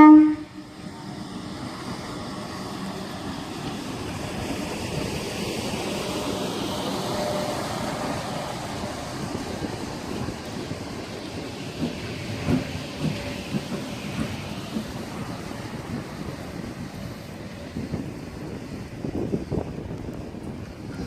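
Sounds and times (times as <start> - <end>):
train horn blast: 0.0 - 0.8
train rumbling past: 0.0 - 21.0.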